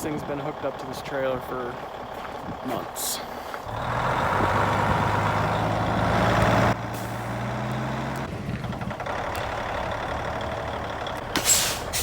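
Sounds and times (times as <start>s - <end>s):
diesel engine idling: 0.0s - 12.0s
compressed air hissing: 11.4s - 12.0s.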